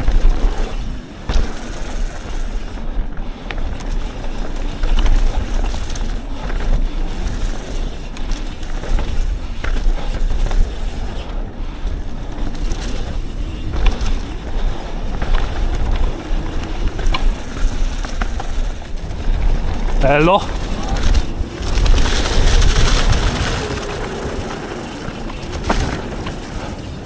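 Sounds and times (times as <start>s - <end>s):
bike rattles and knocks: 0.0s - 27.0s
tyre rumble on dirt: 0.0s - 27.0s
wind on microphone: 8.8s - 27.0s.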